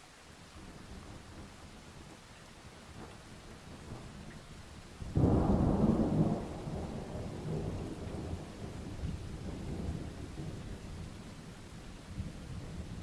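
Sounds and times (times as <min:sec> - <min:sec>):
rain hissing: 0:00.0 - 0:13.0
thunderclap: 0:05.1 - 0:10.5.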